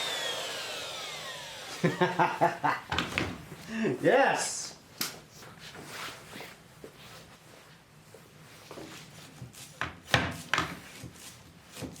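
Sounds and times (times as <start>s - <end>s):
rubbing and handling sounds: 5.2s - 12.0s.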